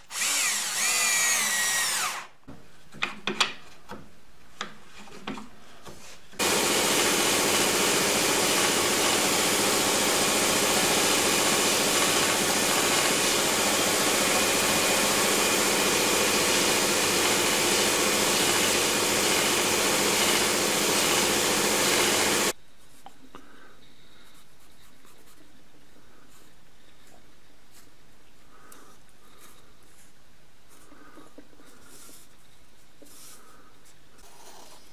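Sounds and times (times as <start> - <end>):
electric power tool running: 0.0 - 2.3, 6.4 - 22.5.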